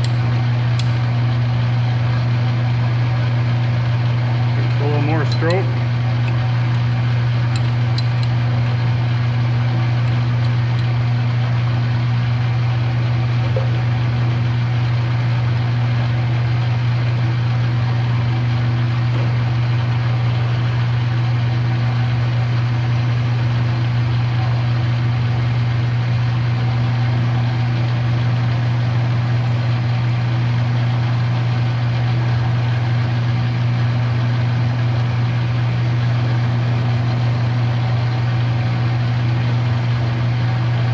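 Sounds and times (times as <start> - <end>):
machine tool cutting metal: 4.6 - 6.4.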